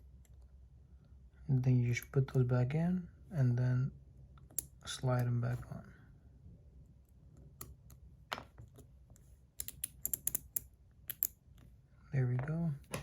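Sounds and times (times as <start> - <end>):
small metal clicks and taps: 9.6 - 11.4.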